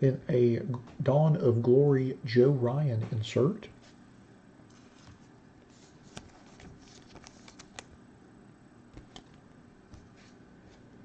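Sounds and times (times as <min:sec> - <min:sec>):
soft rustling of cards: 0:03.7 - 0:04.1, 0:04.7 - 0:08.0, 0:08.9 - 0:11.0
cards clicking and tapping: 0:08.9 - 0:10.0.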